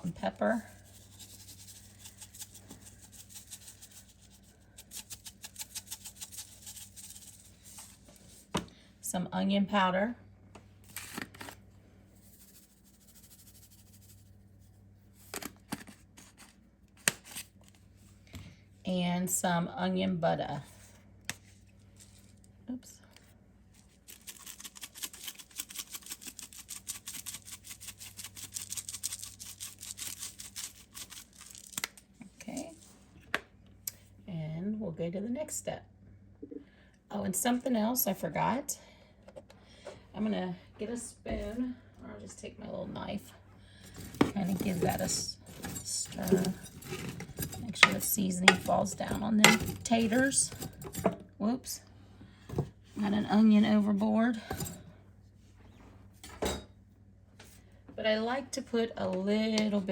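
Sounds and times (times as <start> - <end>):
low steady hum: 0.0 - 59.9
seasoning shaken from bottle: 0.7 - 8.0, 24.1 - 31.8.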